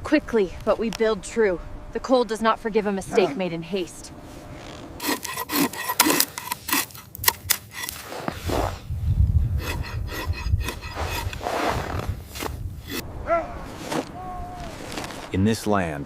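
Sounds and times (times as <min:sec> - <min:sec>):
rasping scrapes on wood: 0:05.0 - 0:08.8, 0:09.6 - 0:13.0
low rumble: 0:08.5 - 0:15.1.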